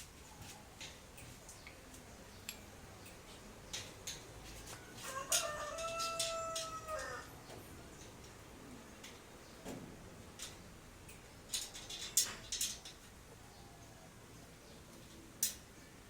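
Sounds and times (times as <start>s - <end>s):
rooster crowing: 4.7s - 7.4s.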